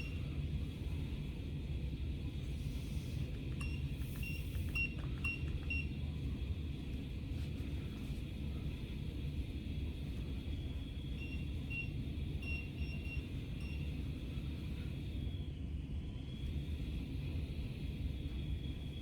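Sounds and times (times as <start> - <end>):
multimeter beeps: 3.6 - 6.0, 11.2 - 13.9.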